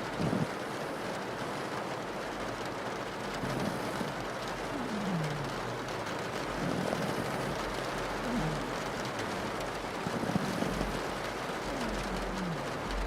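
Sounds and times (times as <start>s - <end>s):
rain on a window: 0.0s - 13.0s
dog snoring: 0.1s - 1.2s, 3.3s - 5.9s, 6.5s - 13.0s.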